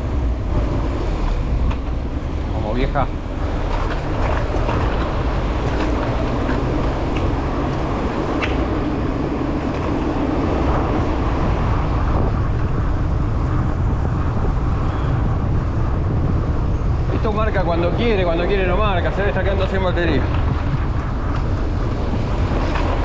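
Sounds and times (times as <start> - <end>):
car traffic: 0.0 - 23.0
wind and road noise: 0.0 - 23.0.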